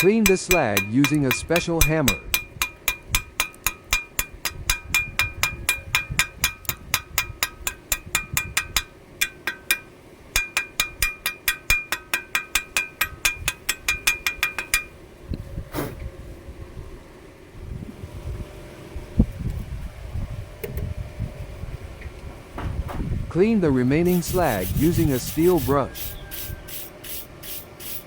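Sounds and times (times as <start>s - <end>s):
chipping hammer tapping steel: 0.0s - 14.9s.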